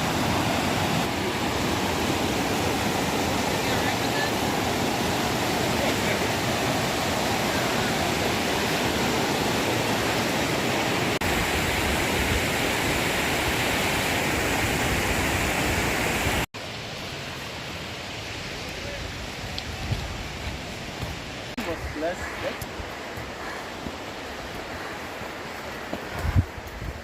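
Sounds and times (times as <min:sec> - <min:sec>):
waterfall roaring: 0:00.0 - 0:27.0.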